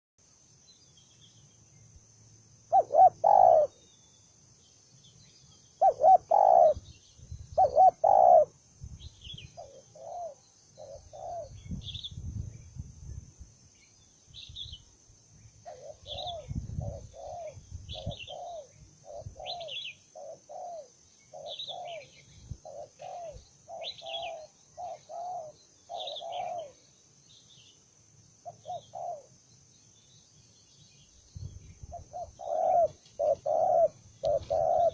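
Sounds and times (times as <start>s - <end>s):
small birds chirping: 0.3s - 34.9s
dove cooing: 2.7s - 3.8s, 5.8s - 6.9s, 7.6s - 8.6s, 9.6s - 11.6s, 15.6s - 26.8s, 28.4s - 29.4s, 31.9s - 34.9s.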